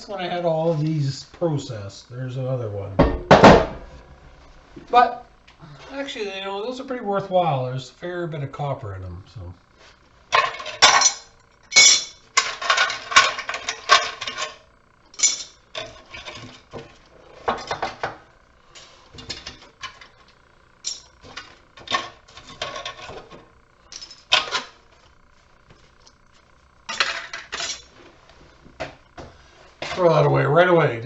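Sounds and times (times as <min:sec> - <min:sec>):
metal scrap clinking: 0:10.4 - 0:14.6, 0:15.2 - 0:16.4, 0:20.8 - 0:21.2.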